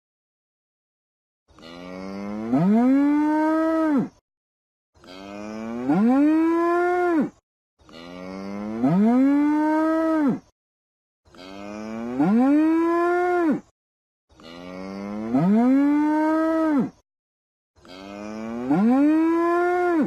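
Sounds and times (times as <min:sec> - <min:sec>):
cow mooing: 0:01.5 - 0:04.2, 0:05.0 - 0:10.5, 0:11.3 - 0:13.7, 0:14.3 - 0:17.0, 0:17.8 - 0:20.0.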